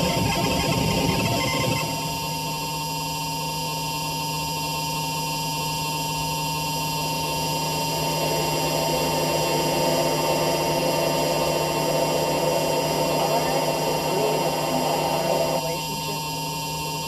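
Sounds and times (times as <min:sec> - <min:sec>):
buzzing low hum: 0:00.0 - 0:03.2
electronic noise music drone: 0:00.0 - 0:04.1, 0:06.7 - 0:16.3.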